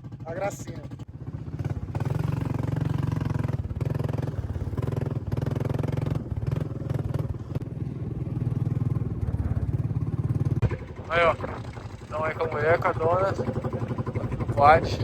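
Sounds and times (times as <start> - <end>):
quad bike engine running: 0.0 - 15.0.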